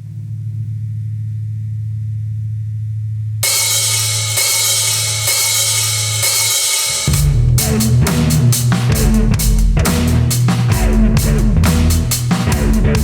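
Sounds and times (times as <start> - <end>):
cymbal wash: 3.4 - 11.0.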